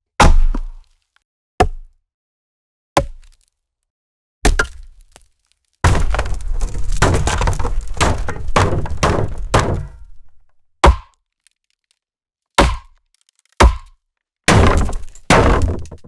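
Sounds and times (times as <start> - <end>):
axe blows splintering wood: 5.9 - 11.1, 12.6 - 13.0, 13.6 - 13.9, 14.5 - 16.0
sharp axe thunk: 5.9 - 11.1, 12.6 - 12.9, 13.6 - 13.9, 14.5 - 16.0.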